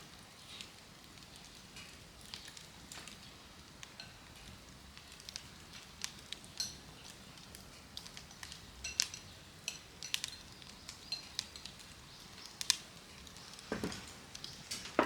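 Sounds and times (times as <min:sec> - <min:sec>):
faint steady hiss: 0:00.0 - 0:15.0
wood fire crackling: 0:00.0 - 0:15.0.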